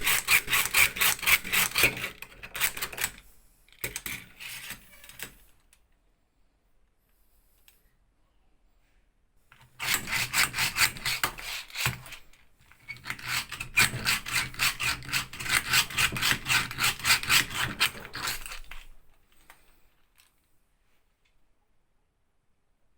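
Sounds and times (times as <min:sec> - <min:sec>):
drill bit scraping: 0:00.0 - 0:03.2, 0:09.7 - 0:18.8
push drill boring into wood: 0:00.0 - 0:03.2, 0:09.6 - 0:18.8.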